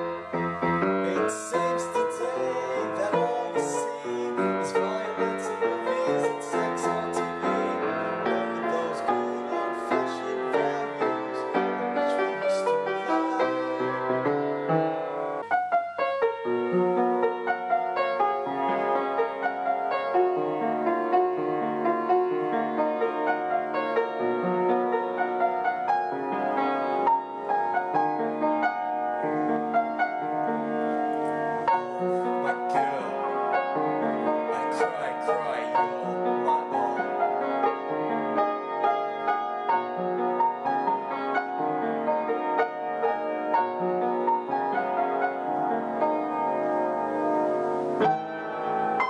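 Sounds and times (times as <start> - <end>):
piano tune: 0.0 - 49.0.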